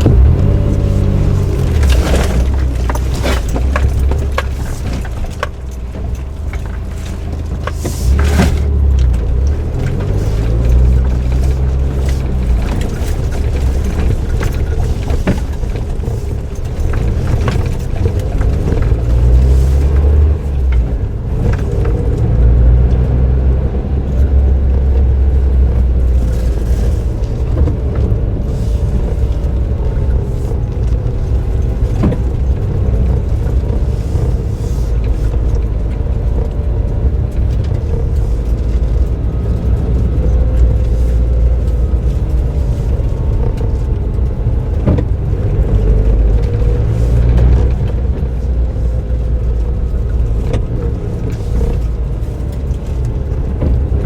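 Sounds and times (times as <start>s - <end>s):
sharp knocks from road: 0.0s - 22.1s, 25.8s - 36.6s, 37.3s - 48.3s
car engine droning: 0.0s - 54.0s
road noise: 0.0s - 54.0s.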